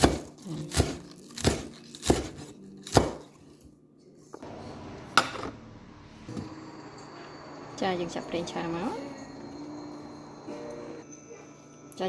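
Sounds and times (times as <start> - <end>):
knife chopping on cutting board: 0.0 - 3.4.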